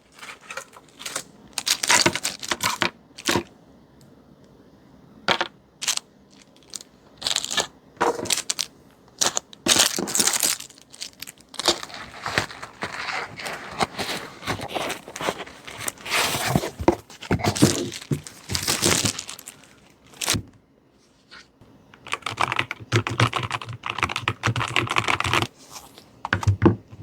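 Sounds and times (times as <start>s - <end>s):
rustling handling noise: 0.0s - 3.5s, 5.3s - 21.6s, 25.3s - 27.0s.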